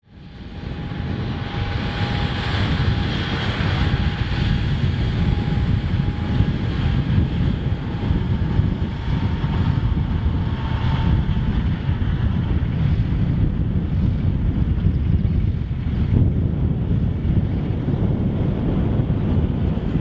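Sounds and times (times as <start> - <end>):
jet engines rumbling: 0.0 - 20.0.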